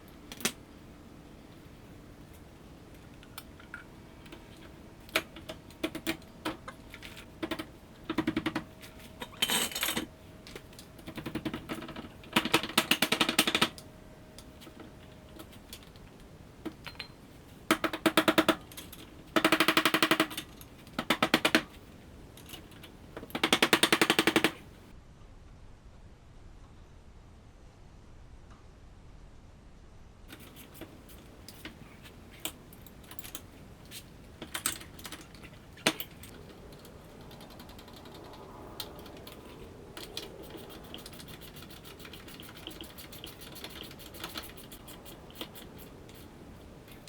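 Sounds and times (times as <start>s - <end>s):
socket ratchet clicking: 11.0s - 13.8s, 17.7s - 21.7s, 22.4s - 24.6s.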